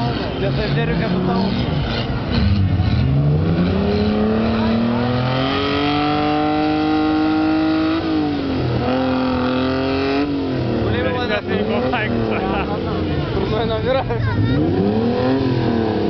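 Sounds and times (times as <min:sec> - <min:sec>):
off-road vehicle engine revving: 0:00.0 - 0:16.0.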